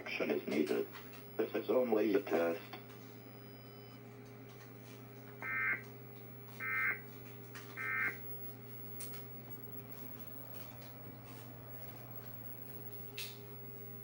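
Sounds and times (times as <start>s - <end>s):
buzzy digital data tones: 7.8s - 8.4s.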